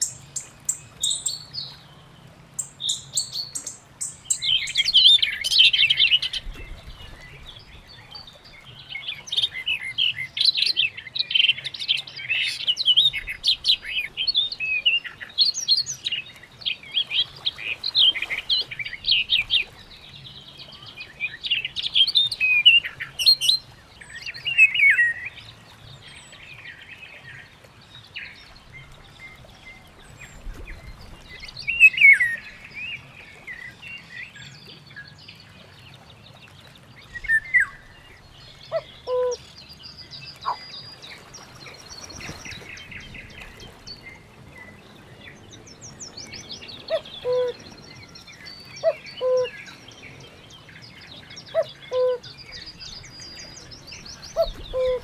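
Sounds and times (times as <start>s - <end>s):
birds chirping and singing: 2.6s - 27.2s, 37.0s - 55.0s
lower bird calls: 46.0s - 49.9s, 51.4s - 55.0s.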